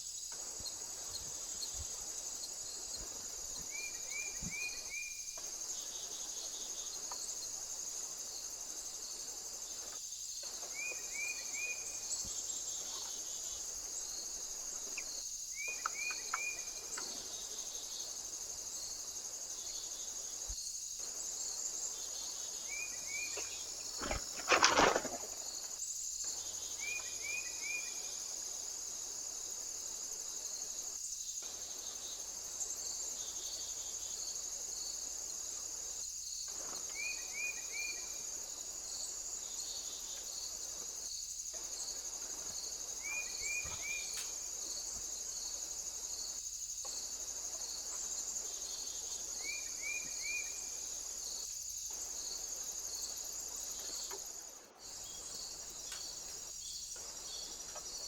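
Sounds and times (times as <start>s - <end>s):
crickets chirping: 0.0s - 58.0s.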